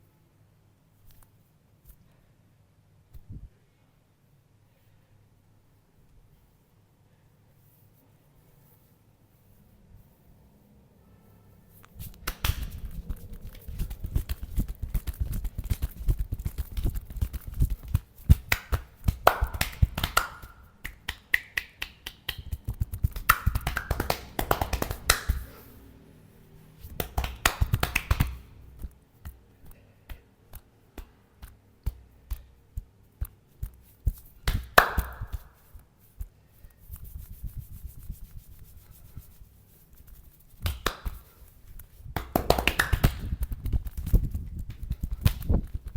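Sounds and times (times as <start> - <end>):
hands slapping and tapping body: 11.8 - 25.6, 26.8 - 45.9.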